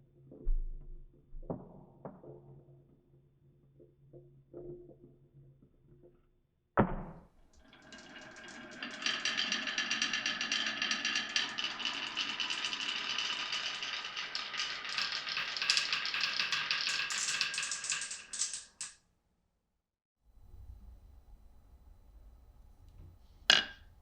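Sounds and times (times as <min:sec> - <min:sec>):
marbles clattering down wooden tracks: 0:07.6 - 0:19.0.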